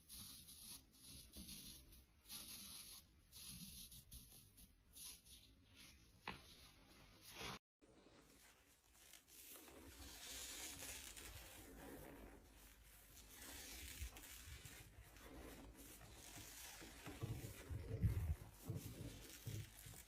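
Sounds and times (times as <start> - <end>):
nylon hosiery rustling: 5.6 - 20.0.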